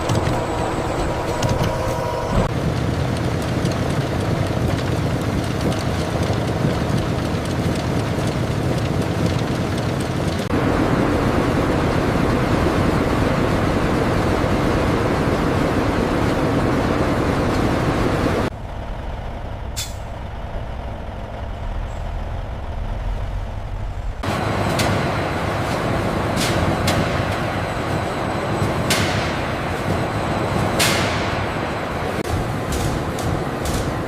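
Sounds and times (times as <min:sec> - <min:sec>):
loud mechanical noise: 0:00.0 - 0:34.0
low rumble: 0:10.4 - 0:34.0.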